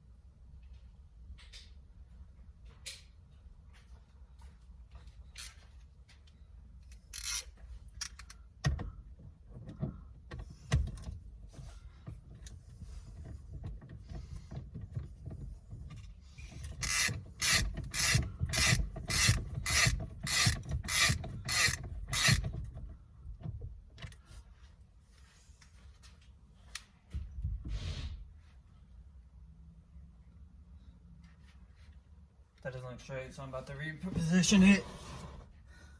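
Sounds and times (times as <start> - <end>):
hand ratchet clicking: 7.0 - 8.4, 16.5 - 22.6.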